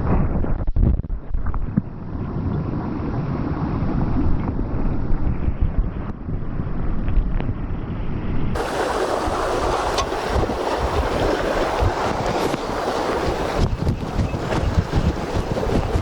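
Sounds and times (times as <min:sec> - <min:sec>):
wind buffeting microphone: 0:00.0 - 0:16.0
sea surf: 0:08.6 - 0:16.0.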